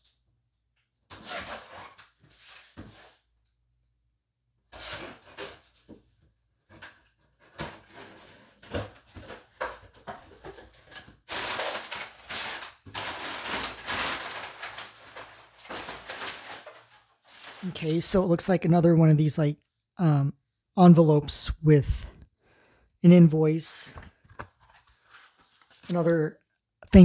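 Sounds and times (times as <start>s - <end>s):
cardboard scraping and tearing: 1.1s - 3.2s, 7.4s - 17.8s.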